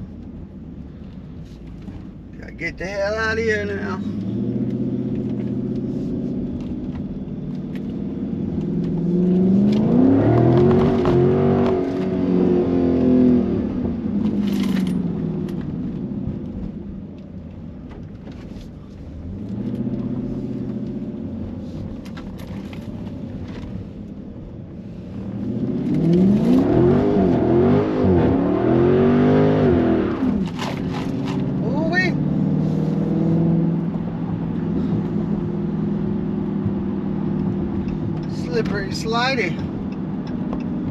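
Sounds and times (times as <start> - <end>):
car engine revving hard: 8.0 - 14.1, 25.2 - 39.5.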